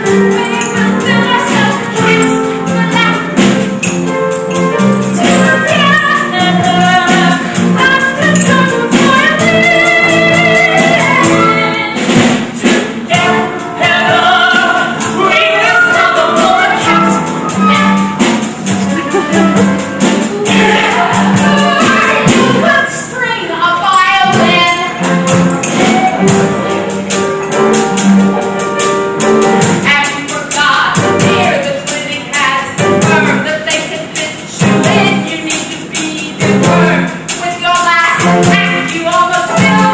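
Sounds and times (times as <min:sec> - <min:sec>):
band accompaniment with percussion: 0:00.0 - 0:39.9
voices singing: 0:13.1 - 0:25.0.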